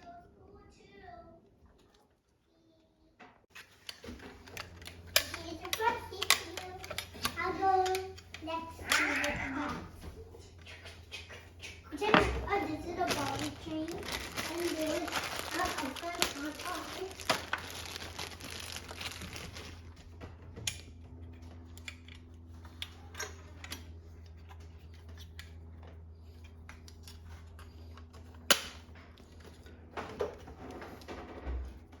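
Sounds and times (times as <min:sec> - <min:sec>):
clicks and taps of objects handled: 0:03.2 - 0:09.0
steady low hum: 0:03.6 - 0:32.0.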